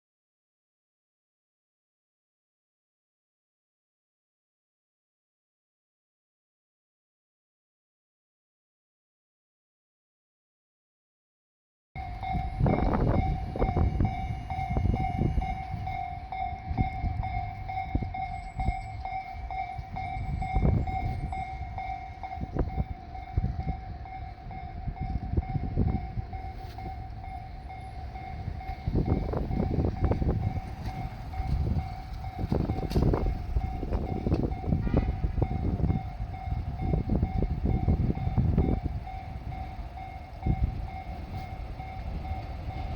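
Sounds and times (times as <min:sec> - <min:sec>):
diesel train rumbling past: 0:12.0 - 0:42.9
level-crossing warning bell: 0:12.0 - 0:42.9
train wheels clattering: 0:25.9 - 0:42.9.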